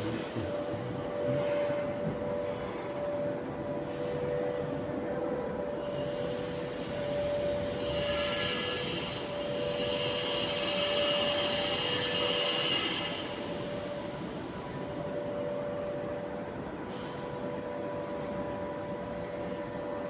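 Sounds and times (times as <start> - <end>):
steady machine hum: 0.0 - 20.0.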